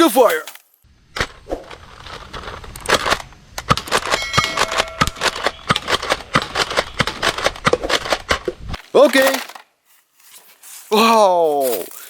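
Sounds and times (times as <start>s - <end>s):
fast run of clicks: 1.7s - 8.6s
plastic toy gun clicks and knocks: 2.7s - 8.5s.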